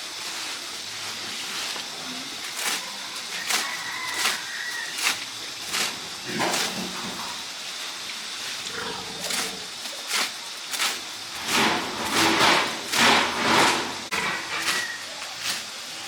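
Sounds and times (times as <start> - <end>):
pigs squealing: 2.4 - 7.4, 8.6 - 9.8, 11.5 - 15.6.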